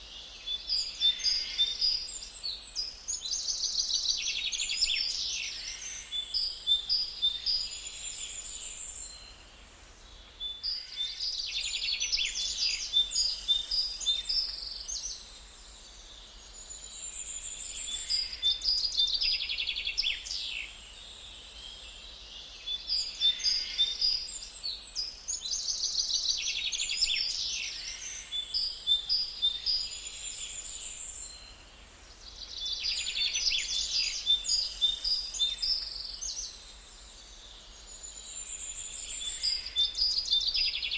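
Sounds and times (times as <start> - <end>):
small birds chirping and singing: 0.0 - 40.9.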